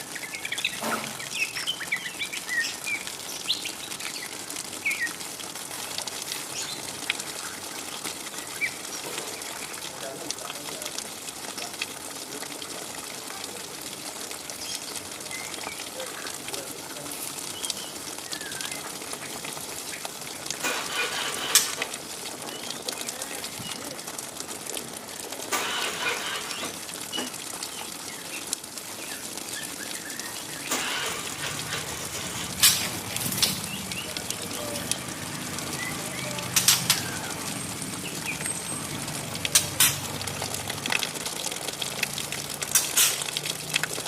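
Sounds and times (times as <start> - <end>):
bird chirping: 0.1 - 5.2, 17.5 - 18.9, 26.5 - 30.7, 32.6 - 35.1
rustling bursts: 30.6 - 41.2.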